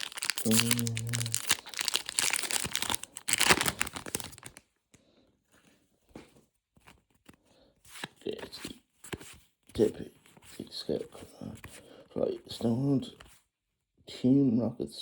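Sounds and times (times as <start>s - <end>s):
foil wrapper crinkling and tearing: 0.0s - 4.6s.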